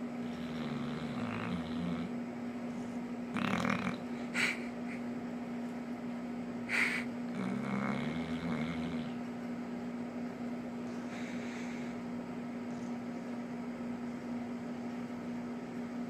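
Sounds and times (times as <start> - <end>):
steady hum: 0.0 - 16.0
dog snorts: 0.2 - 2.1, 3.3 - 4.7, 6.7 - 9.2
dog snoring: 0.2 - 2.2, 3.3 - 4.6, 6.7 - 9.2.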